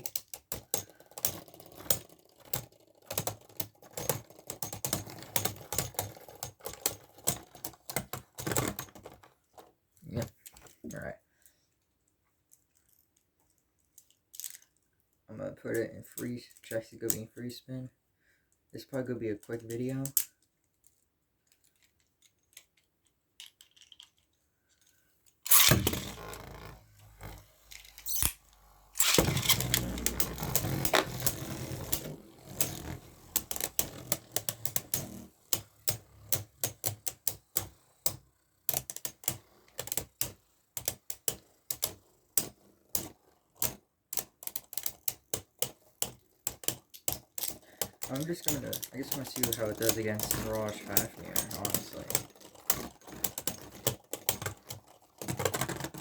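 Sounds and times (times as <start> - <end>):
plastic tops clacking: 21.6 - 24.4, 25.5 - 28.4, 29.0 - 35.7, 46.6 - 56.0
spinning top launch whir: 25.4 - 43.6, 47.8 - 53.5.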